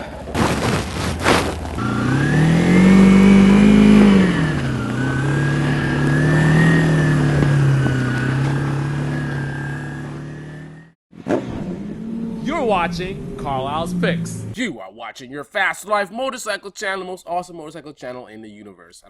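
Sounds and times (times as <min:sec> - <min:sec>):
motorcycle engine revving: 0:01.2 - 0:14.6.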